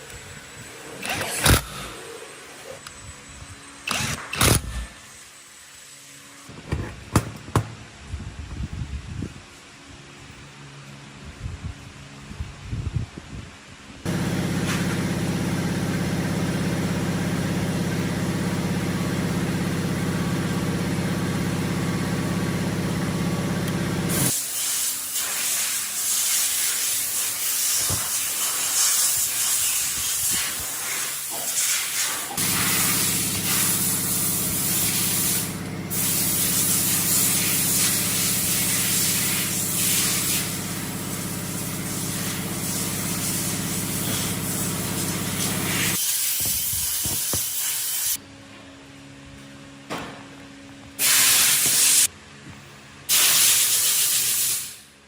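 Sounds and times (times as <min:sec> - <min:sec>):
machine humming: 0:14.1 - 0:24.3, 0:32.4 - 0:46.0
loud hiss: 0:24.0 - 0:48.2, 0:51.0 - 0:52.1, 0:53.1 - 0:55.0.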